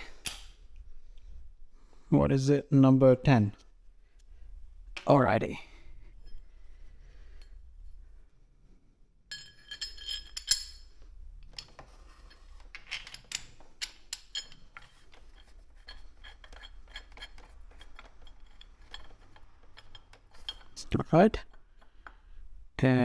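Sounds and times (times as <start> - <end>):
ringing metal-on-metal clinks: 9.3 - 10.9
metal tools clinking: 9.3 - 22.0.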